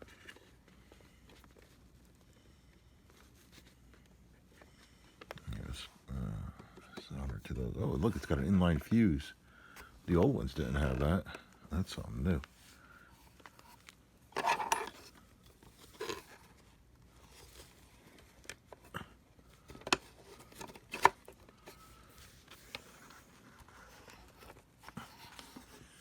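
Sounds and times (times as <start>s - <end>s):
rustling scrape: 13.6s - 18.3s.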